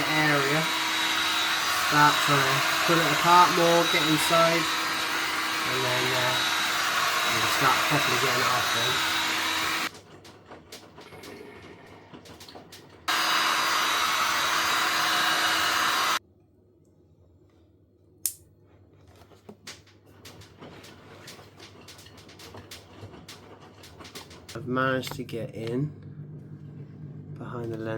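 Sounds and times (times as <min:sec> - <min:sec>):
heat gun blowing: 0:00.0 - 0:09.9, 0:13.1 - 0:16.2.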